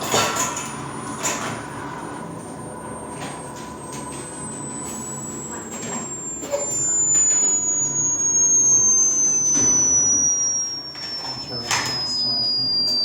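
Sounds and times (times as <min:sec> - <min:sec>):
high-pitched tone gliding downward: 0:04.6 - 0:13.0.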